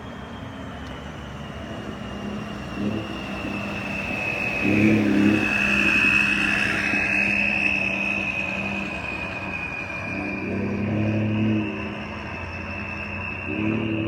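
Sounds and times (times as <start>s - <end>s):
high-pitched turbo whistle: 0.0s - 14.0s
truck engine and exhaust: 0.0s - 14.0s.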